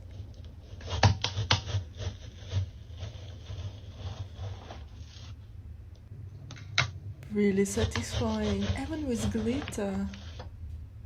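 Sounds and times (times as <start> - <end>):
tool scraping thick paint: 0.6 - 5.4, 7.4 - 10.5.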